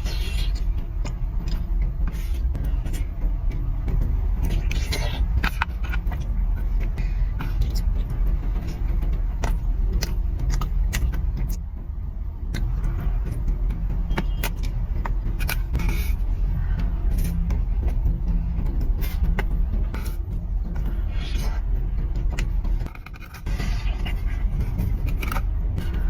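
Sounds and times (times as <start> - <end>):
low rumble: 0.0 - 26.0
chewing crunches: 4.4 - 11.6, 12.4 - 13.5, 18.7 - 26.0.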